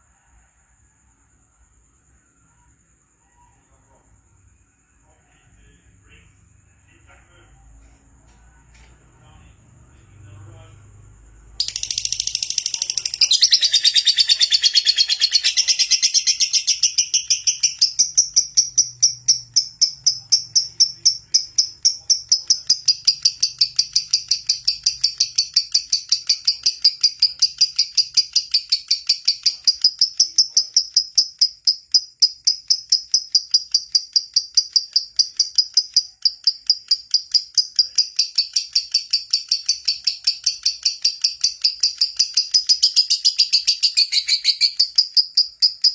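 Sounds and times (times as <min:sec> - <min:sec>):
bird singing rapid high chirps: 0:11.6 - 0:30.6, 0:34.6 - 0:45.9.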